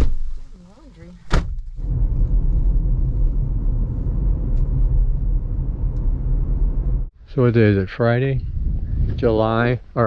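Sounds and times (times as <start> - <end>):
car road rumble from inside: 0.0 - 7.1.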